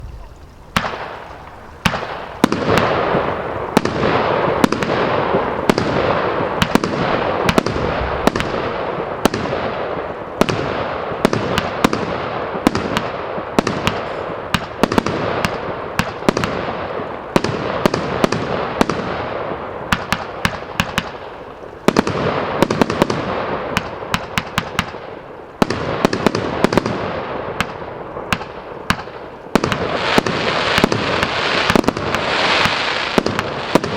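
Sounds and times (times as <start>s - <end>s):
fireworks rushing hiss: 0.0s - 9.4s, 29.1s - 33.9s
fireworks bangs: 0.0s - 33.9s.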